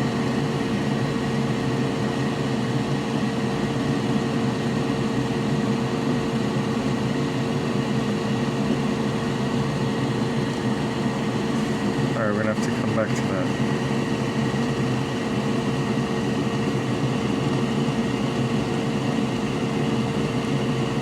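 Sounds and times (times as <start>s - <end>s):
fan drone with hum: 0.0s - 21.0s.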